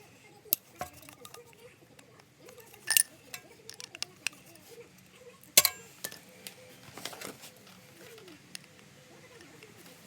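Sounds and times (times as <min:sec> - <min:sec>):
metal parts and tools clinking: 0:00.5 - 0:01.6, 0:02.5 - 0:04.6, 0:05.6 - 0:06.3.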